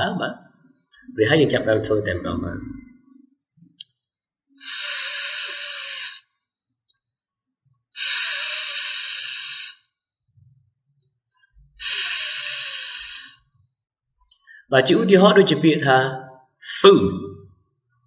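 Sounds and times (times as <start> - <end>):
person making f sound: 14.7 - 15.5.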